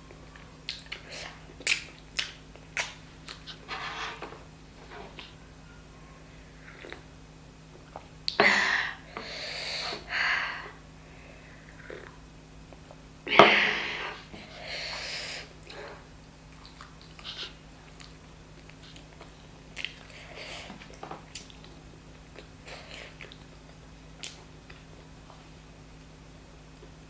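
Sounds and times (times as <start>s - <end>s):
quiet chewing: 0.3s - 3.7s, 6.6s - 7.1s, 15.6s - 25.1s
lip smacks and clicks: 0.7s - 3.6s, 24.2s - 24.8s.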